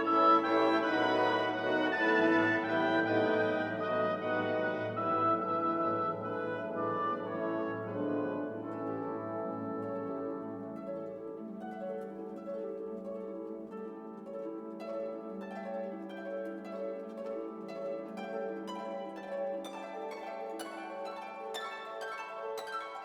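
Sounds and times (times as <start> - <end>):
pizzicato strings: 0.0 - 9.6
plucked harp: 0.0 - 23.0
sustained bowed strings: 0.0 - 23.0.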